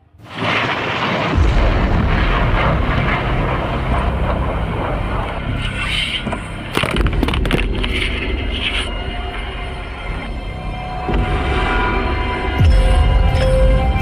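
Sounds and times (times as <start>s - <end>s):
sharp cracks: 0.2s - 9.0s
loud low rumbling: 0.2s - 14.0s.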